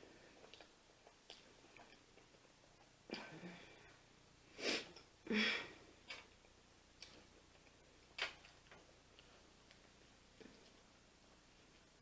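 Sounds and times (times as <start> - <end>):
person chewing with mouth clicks: 0.3 - 3.0, 6.0 - 8.3.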